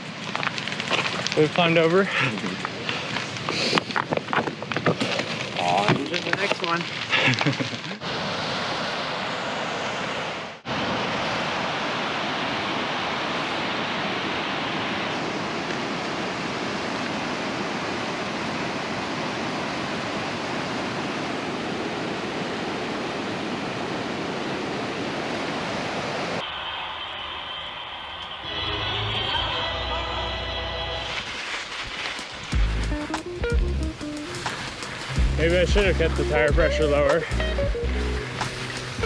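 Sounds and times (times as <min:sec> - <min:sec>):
bike tyres on gravel: 0:00.0 - 0:08.0, 0:28.4 - 0:39.0.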